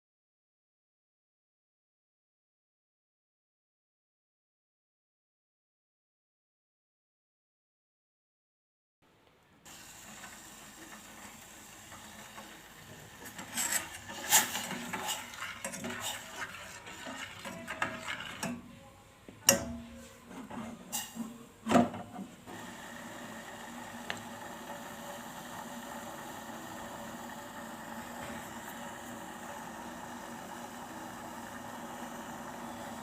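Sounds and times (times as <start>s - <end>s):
stirring noise: 10.0s - 18.8s.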